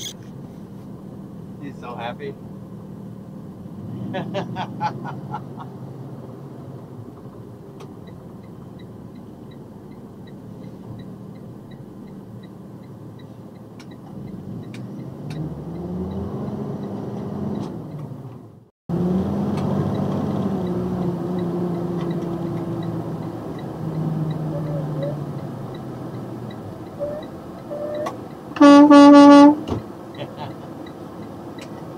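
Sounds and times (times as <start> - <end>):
truck engine running: 0.0 - 31.9
turn signal clicker ticking: 7.0 - 18.5, 19.6 - 31.9.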